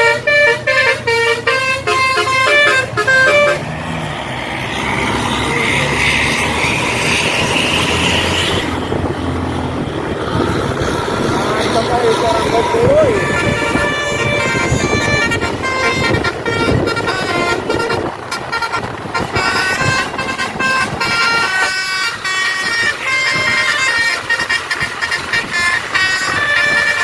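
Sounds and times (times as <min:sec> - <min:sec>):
musical air horn tune: 0:00.0 - 0:03.7, 0:12.0 - 0:27.0
bus engine: 0:00.0 - 0:27.0.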